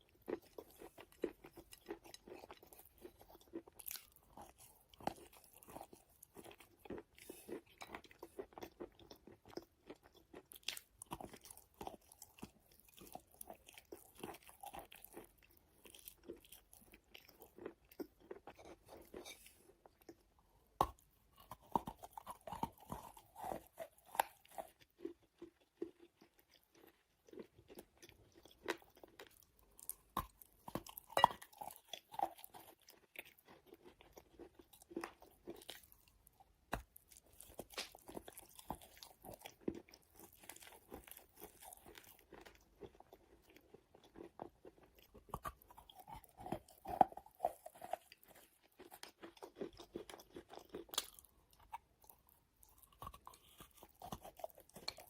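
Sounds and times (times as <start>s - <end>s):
chalk being chewed: 20.8s - 55.0s.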